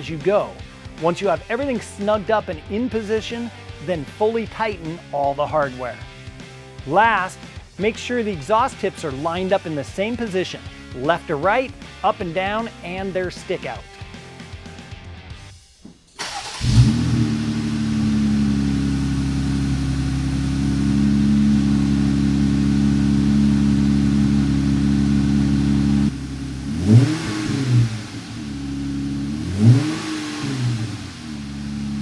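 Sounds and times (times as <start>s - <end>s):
car engine idling: 16.2s - 32.0s
engine revving: 16.2s - 32.0s.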